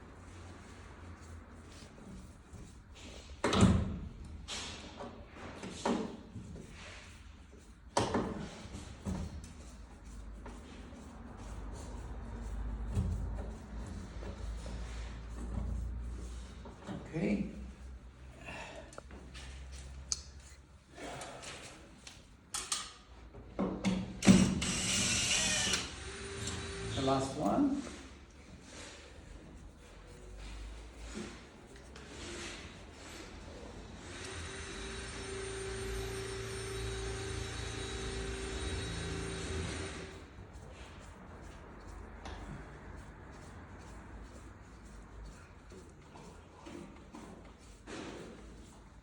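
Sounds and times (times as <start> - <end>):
power tool whirring: 24.2 - 27.3, 34.0 - 40.2.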